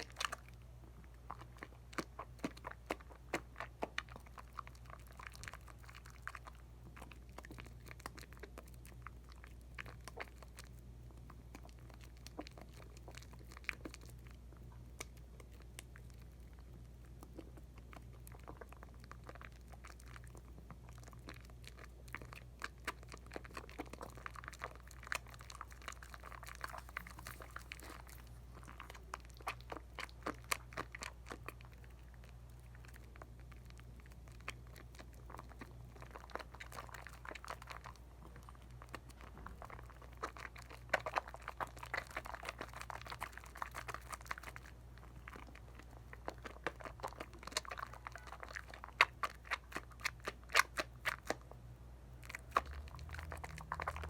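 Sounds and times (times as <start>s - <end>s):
soap lather crackling: 20.4s - 51.5s, 52.2s - 54.0s.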